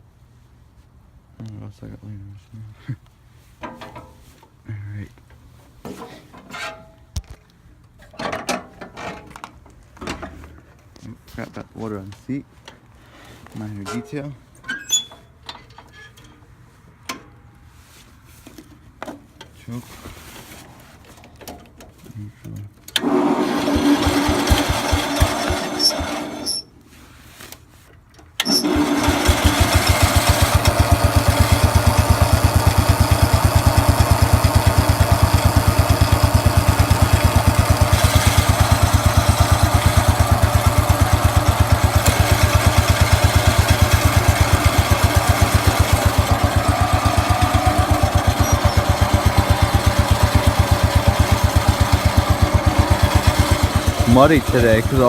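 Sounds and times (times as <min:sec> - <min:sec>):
engine cranking: 0:22.9 - 0:26.6, 0:28.4 - 0:55.0
small engine running steadily: 0:23.0 - 0:26.6, 0:28.5 - 0:55.0.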